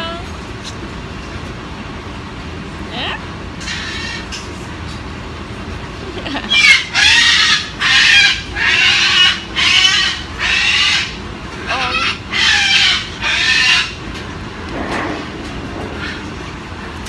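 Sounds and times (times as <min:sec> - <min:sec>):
cockatoo raspy calls: 0:06.5 - 0:14.0.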